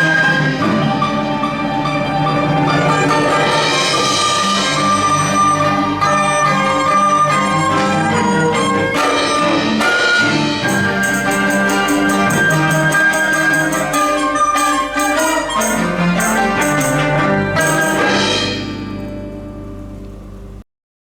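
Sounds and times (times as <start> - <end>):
chamber ensemble playing: 0.0 - 19.8.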